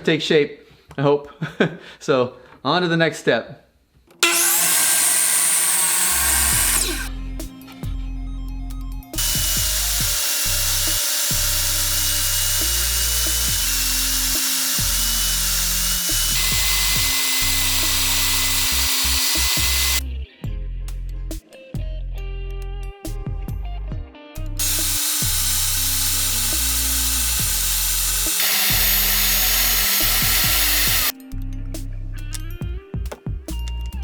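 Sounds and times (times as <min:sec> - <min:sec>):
power tool cutting wood: 0:04.2 - 0:07.2, 0:09.2 - 0:20.0, 0:24.6 - 0:31.1
background music with bass: 0:06.8 - 0:34.0.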